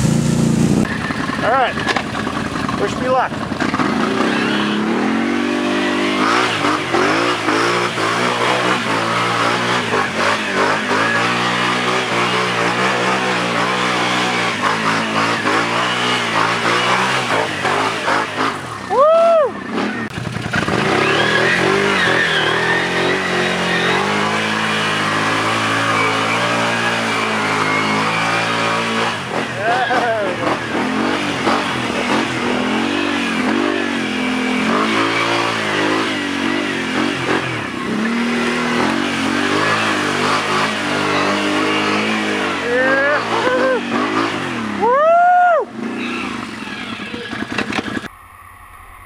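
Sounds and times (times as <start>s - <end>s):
atv engine revving: 0.0s - 48.2s
rising and falling whine: 48.0s - 49.0s.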